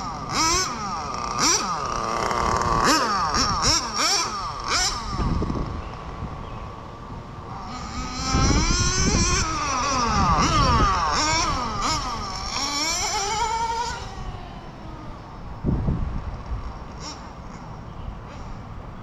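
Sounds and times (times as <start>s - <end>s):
model car engine revving: 0.0s - 6.0s, 7.5s - 15.2s, 16.9s - 17.6s.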